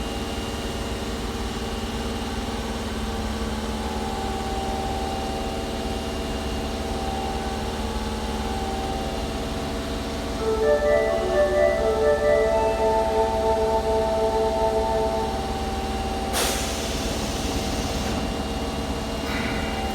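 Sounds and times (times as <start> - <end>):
subway train mechanical hum: 0.0 - 19.9
train horn: 10.3 - 16.8.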